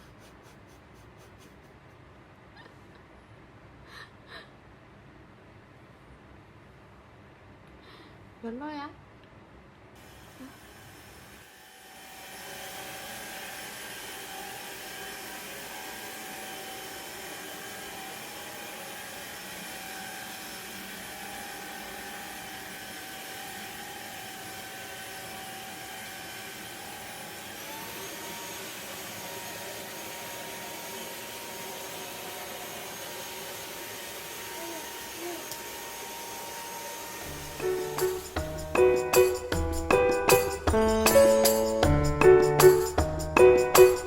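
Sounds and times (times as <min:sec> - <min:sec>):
vacuum cleaner motor whine: 0:10.0 - 0:39.7.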